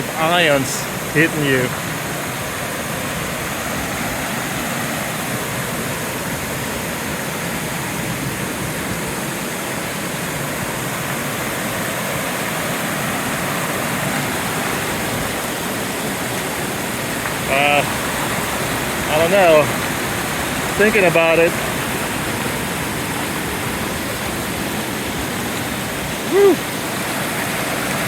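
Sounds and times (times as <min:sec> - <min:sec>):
waterfall roaring: 0:00.0 - 0:28.0.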